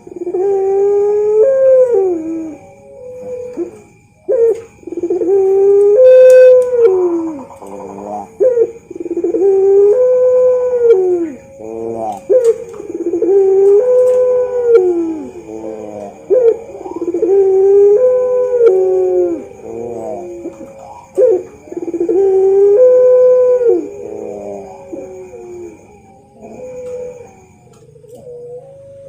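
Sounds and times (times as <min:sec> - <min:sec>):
dove cooing: 0:00.0 - 0:29.0.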